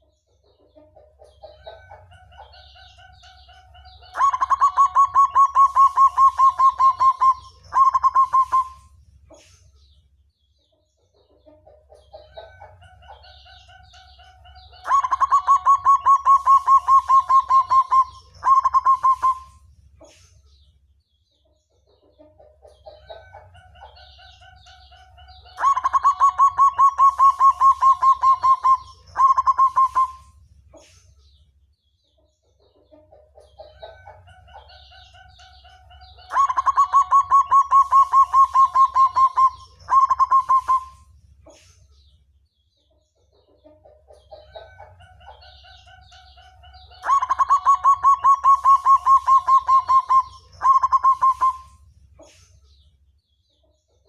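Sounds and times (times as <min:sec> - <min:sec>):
dove cooing and trilling: 0:03.8 - 0:08.9, 0:14.8 - 0:19.6, 0:24.6 - 0:30.3, 0:35.2 - 0:41.0, 0:47.0 - 0:51.8.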